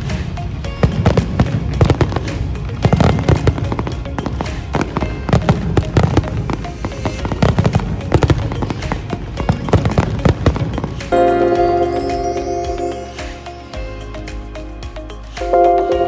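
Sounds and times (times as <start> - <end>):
fireworks bangs and crackles: 0.0 - 11.2.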